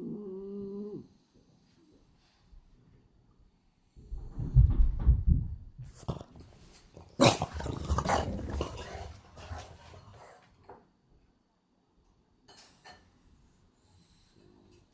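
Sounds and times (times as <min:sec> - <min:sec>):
low thumps: 0:04.0 - 0:06.0.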